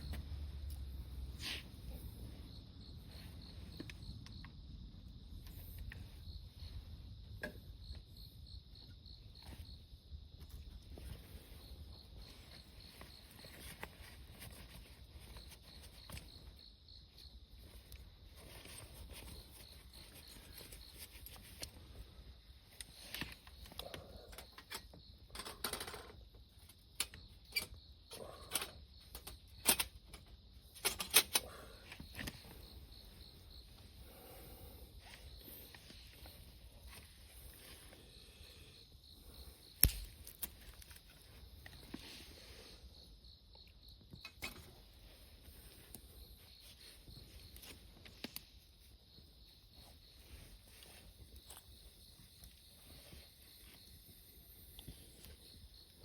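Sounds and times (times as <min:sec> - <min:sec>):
crickets chirping: 0:00.0 - 0:56.0.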